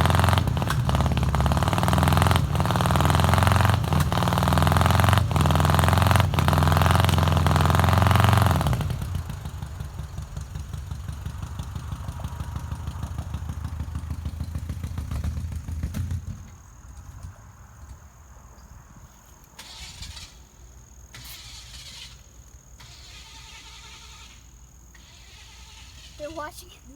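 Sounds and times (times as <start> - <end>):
car engine running: 0.0 - 18.0.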